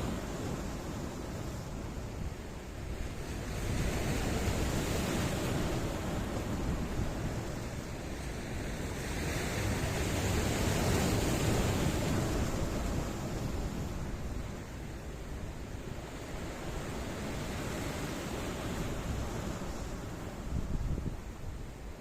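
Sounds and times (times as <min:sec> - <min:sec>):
sea surf rushing over rocks: 0:00.0 - 0:22.0.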